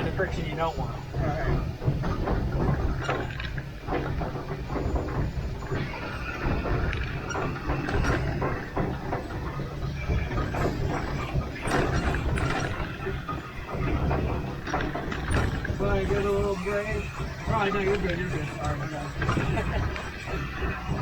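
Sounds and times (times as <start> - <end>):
clanks knocks and rattles: 0.0 - 21.0
steam locomotive rumble: 0.0 - 21.0.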